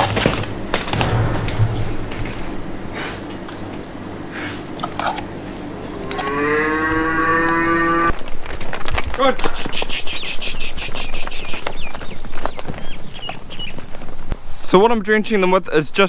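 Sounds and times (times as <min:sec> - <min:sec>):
calf mooing: 0:05.7 - 0:08.1.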